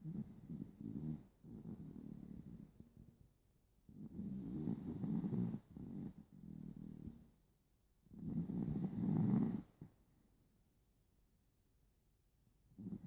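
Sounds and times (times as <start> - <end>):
small dog snoring: 0.0 - 3.1, 3.9 - 7.3, 8.1 - 9.9, 12.7 - 13.0.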